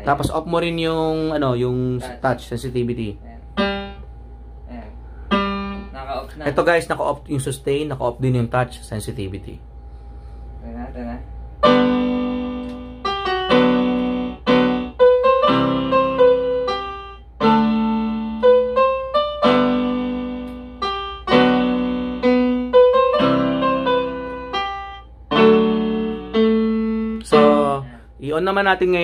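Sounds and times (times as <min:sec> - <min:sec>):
electronic keyboard chords: 0:03.6 - 0:04.1, 0:05.3 - 0:06.2, 0:11.6 - 0:28.0
keyboard single notes: 0:11.6 - 0:27.9.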